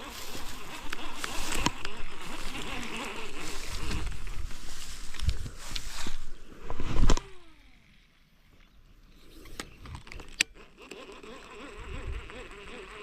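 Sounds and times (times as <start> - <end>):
reel winding whine: 0.0 - 13.0
line whizzing off reel: 5.9 - 7.7.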